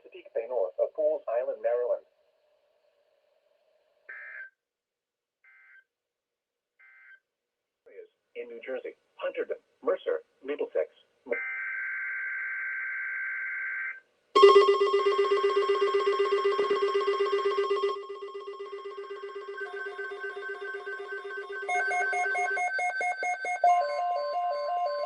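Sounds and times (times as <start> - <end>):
rapid alarm beeping: 14.4 - 25.0.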